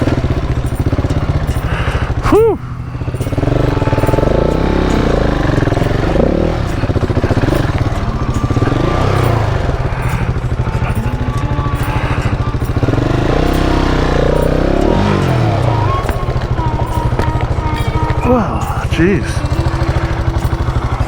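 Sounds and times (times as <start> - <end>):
motorcycle engine revving: 0.0 - 21.0.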